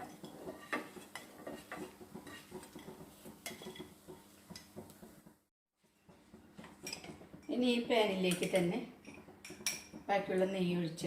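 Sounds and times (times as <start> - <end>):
metal utensil scraping frying pan: 0.0 - 4.8.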